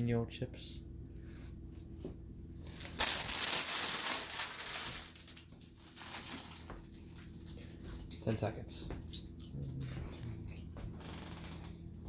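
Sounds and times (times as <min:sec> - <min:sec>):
chip bag crinkling: 0:02.7 - 0:07.2.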